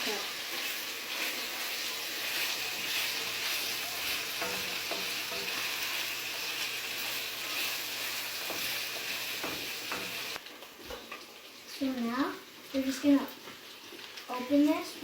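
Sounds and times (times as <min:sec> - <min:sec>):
bacon sizzling in a frying pan: 0:00.0 - 0:15.0
utensil clicking against pan: 0:08.4 - 0:10.4.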